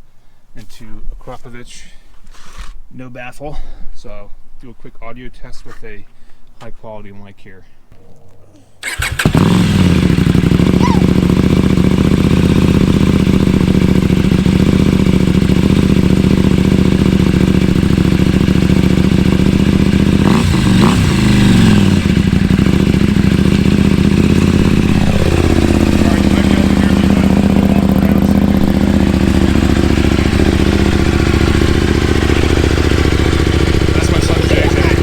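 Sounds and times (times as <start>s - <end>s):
motorcycle engine idling and revving: 8.8s - 35.0s.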